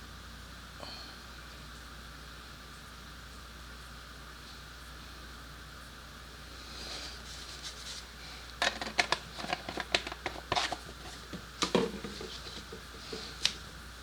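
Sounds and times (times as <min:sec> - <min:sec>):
objects clicking and knocking: 0:08.6 - 0:13.6.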